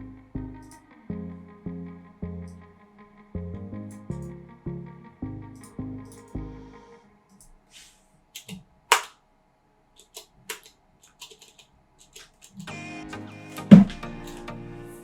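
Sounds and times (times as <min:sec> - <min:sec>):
keyboard and mouse clicks: 0:08.4 - 0:09.1, 0:10.0 - 0:12.8.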